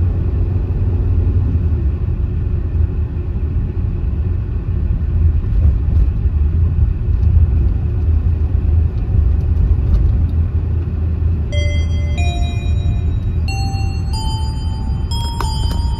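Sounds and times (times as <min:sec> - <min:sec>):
vehicle rumble and road noise: 0:00.0 - 0:15.9
chiming music notes: 0:11.5 - 0:15.9.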